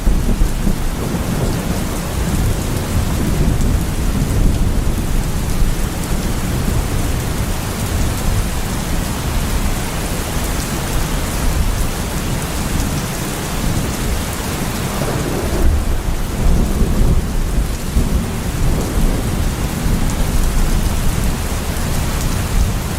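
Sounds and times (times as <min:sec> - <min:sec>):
heavy rain falling: 0:00.0 - 0:22.9
low thunder rumbling: 0:00.0 - 0:22.9.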